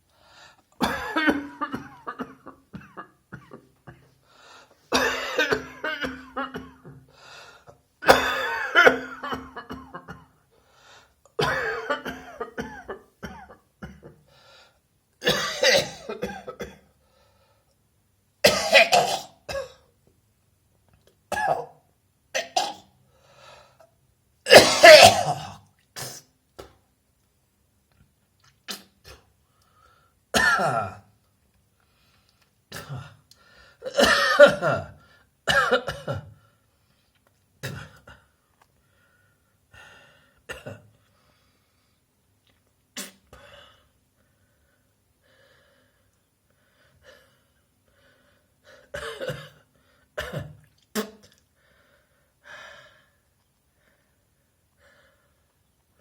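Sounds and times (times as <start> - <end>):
person coughing: 0.8 - 4.2, 4.9 - 7.0, 8.0 - 10.4, 11.4 - 14.2, 15.2 - 16.9, 18.5 - 19.9, 24.5 - 26.2, 30.4 - 31.1, 33.8 - 36.4, 37.6 - 38.2, 49.0 - 51.4.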